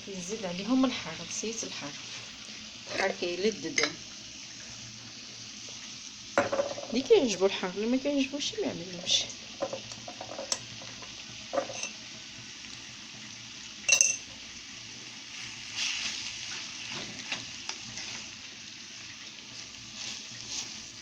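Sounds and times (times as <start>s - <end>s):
faint sizzle: 0.0s - 21.0s
utensil clinking against pot: 3.8s - 4.0s, 9.6s - 10.6s, 11.5s - 12.0s, 13.9s - 14.3s
metal utensil stirring in pot: 11.6s - 12.0s.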